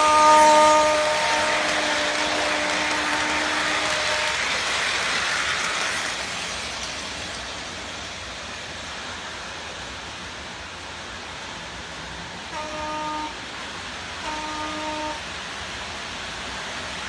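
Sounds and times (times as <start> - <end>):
toy train horn buzzing: 0.0 - 5.2, 12.6 - 13.4, 14.2 - 15.2
toy train motor whirring: 0.9 - 7.5.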